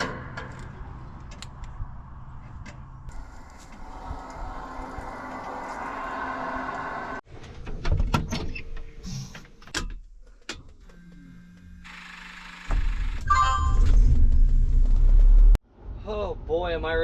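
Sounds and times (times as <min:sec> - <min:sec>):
steady hum: 0:03.1 - 0:07.2.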